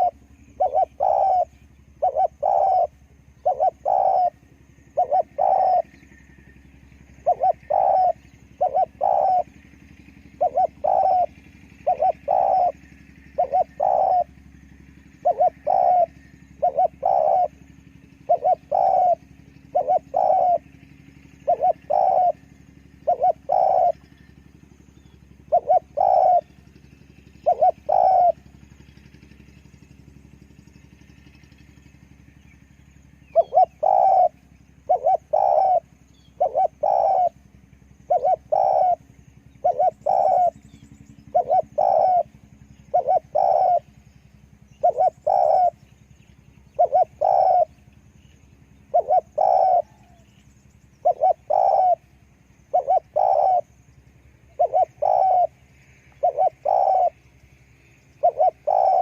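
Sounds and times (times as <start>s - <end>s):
dove cooing: 0.0s - 59.0s.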